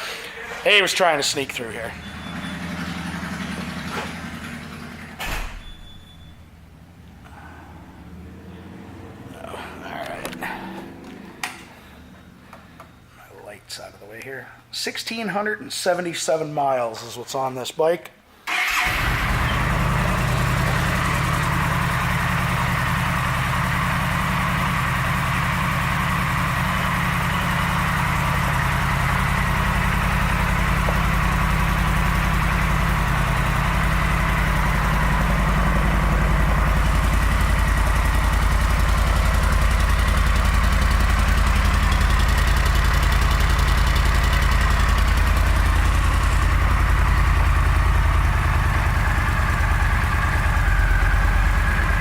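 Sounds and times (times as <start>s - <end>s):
motorcycle engine idling: 1.3s - 5.2s, 18.7s - 52.0s.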